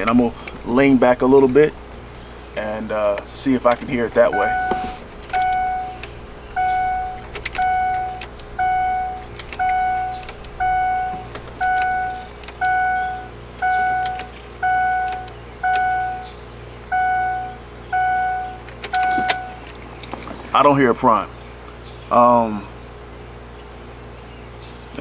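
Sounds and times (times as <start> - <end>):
faint clicks: 0.0 - 17.2
dashboard warning chime: 0.0 - 19.8.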